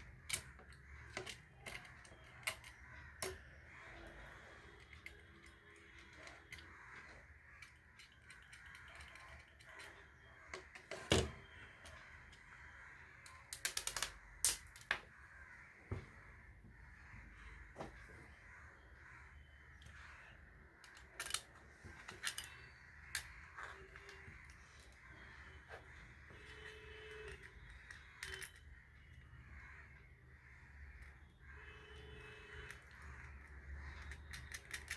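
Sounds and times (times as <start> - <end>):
clicks and knocks of fitting parts: 0.0 - 4.2, 4.8 - 12.5, 13.1 - 15.1, 20.8 - 29.2, 32.6 - 34.9.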